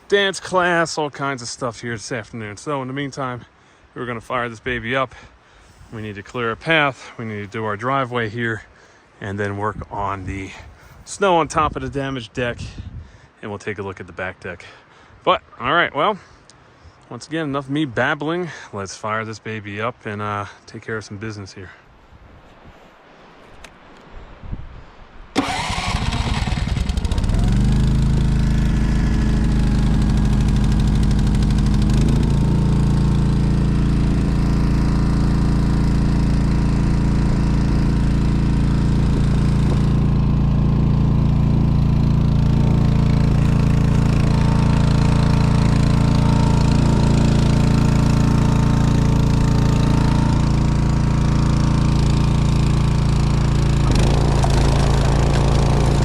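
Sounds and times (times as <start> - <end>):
snowblower engine running: 25.4 - 56.0.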